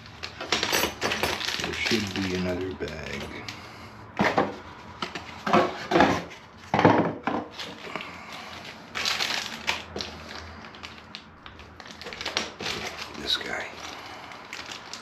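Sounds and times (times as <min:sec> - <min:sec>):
packaging rustling and crinkling: 0:00.0 - 0:03.6, 0:07.4 - 0:15.0.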